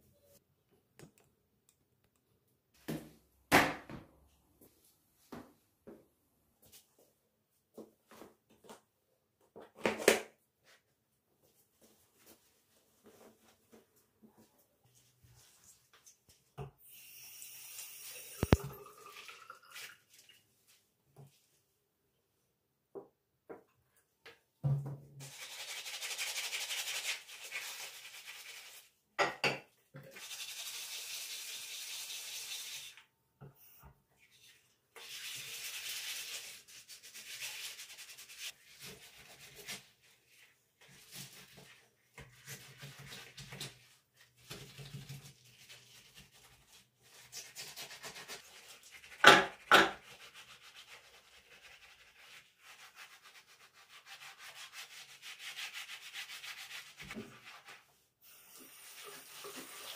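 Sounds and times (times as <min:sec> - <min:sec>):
hand scrubbing a surface: 0:34.4 - 0:58.0.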